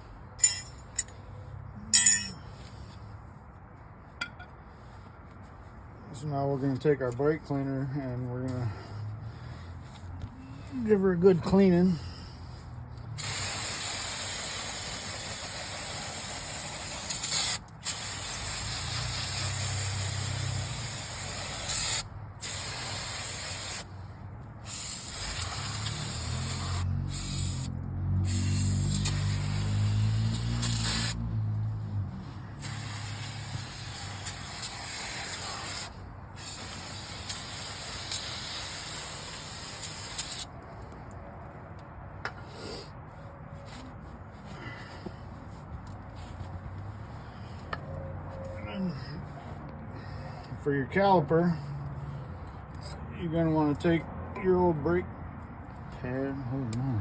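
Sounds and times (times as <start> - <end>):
aerosol spray hissing: 13.2 - 23.9, 24.7 - 27.7, 28.3 - 31.2, 32.6 - 40.5.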